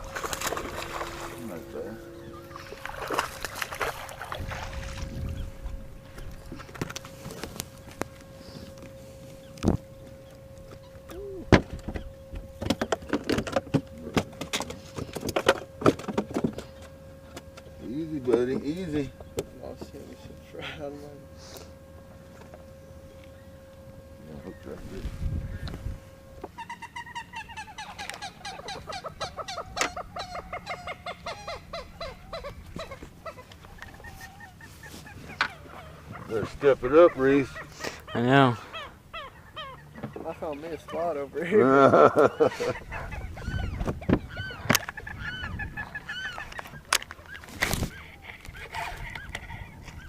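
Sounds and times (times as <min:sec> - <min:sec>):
small electric motor whining: 0:00.0 - 0:29.0
birds chattering calls: 0:00.0 - 0:50.0.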